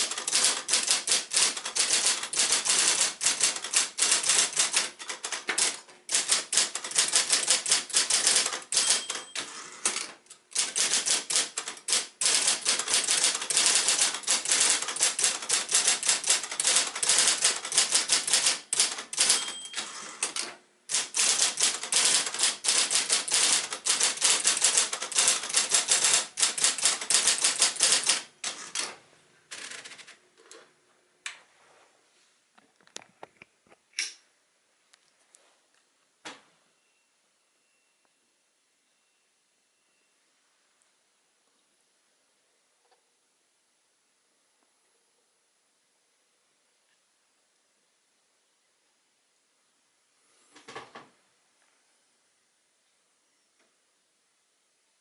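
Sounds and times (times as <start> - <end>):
electric typewriter typing: 0.0 - 30.2.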